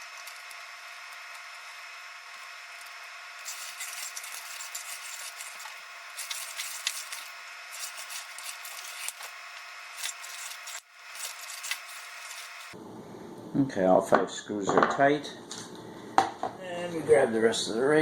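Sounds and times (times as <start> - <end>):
screwdriver rasping and clicking: 3.4 - 12.8.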